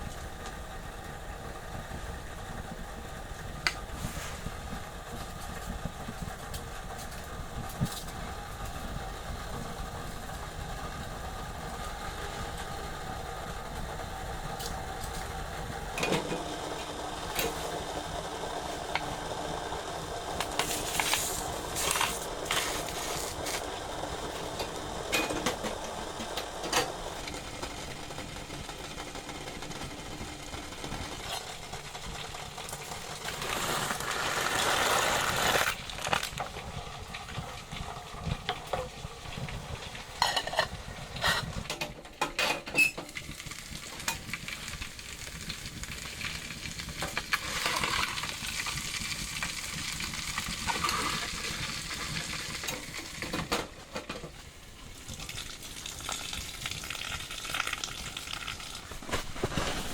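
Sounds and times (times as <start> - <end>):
food sizzling in a pan: 14.2 - 28.2, 31.1 - 41.6, 42.8 - 53.4, 54.9 - 59.9.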